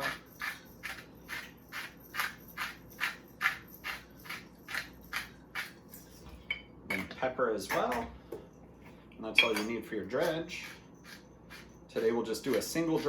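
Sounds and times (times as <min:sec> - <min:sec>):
salt grinder grinding: 0:00.0 - 0:06.0, 0:10.1 - 0:13.0.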